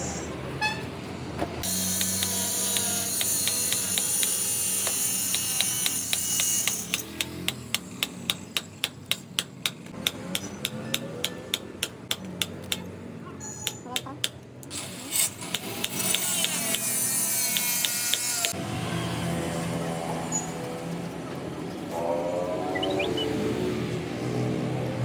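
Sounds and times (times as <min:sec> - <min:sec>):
scattered knocks: 0:01.9 - 0:12.9.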